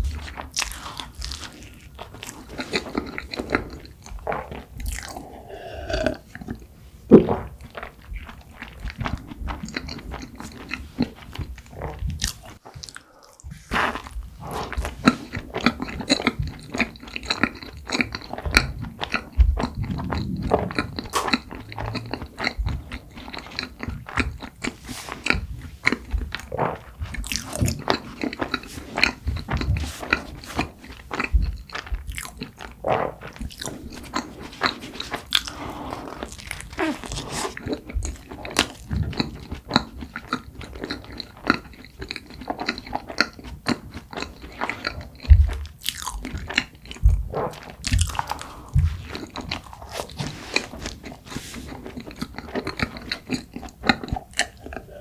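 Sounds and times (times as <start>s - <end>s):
chewing and biting bread: 0.0s - 55.0s
mouth clicks and smacks: 0.0s - 55.0s.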